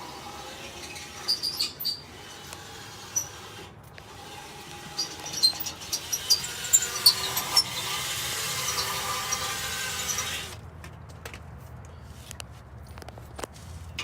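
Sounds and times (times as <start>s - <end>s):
power tool whining: 0.0s - 10.6s.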